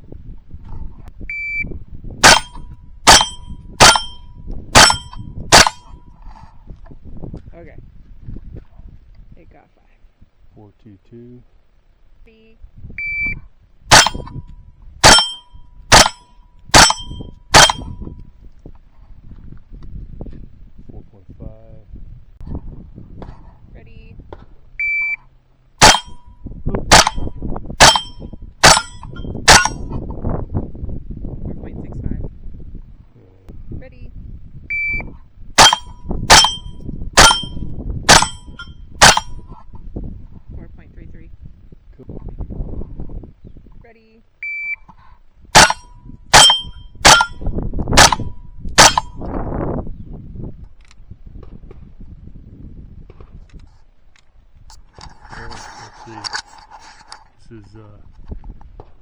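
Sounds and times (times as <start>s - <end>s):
shot timer beep: 1.3s - 5.8s, 13.0s - 14.3s, 24.8s - 25.2s, 34.7s - 39.4s, 44.4s - 44.8s
rifle shots: 2.2s - 4.2s, 4.8s - 5.8s, 13.9s - 14.3s, 15.0s - 17.9s, 25.8s - 26.2s, 26.9s - 29.8s, 35.6s - 39.4s, 45.6s - 47.4s, 48.0s - 49.1s
steel target ringing: 2.2s - 6.0s, 13.9s - 14.4s, 15.0s - 18.0s, 25.8s - 26.3s, 26.9s - 29.9s, 35.6s - 39.4s, 45.6s - 49.3s
rimfire gunshots: 26.9s - 29.8s, 48.0s - 48.2s.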